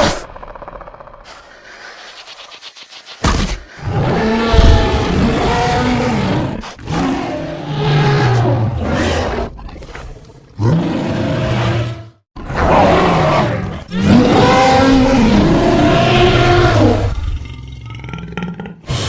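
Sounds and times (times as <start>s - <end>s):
creature roaring: 10.6s - 19.0s.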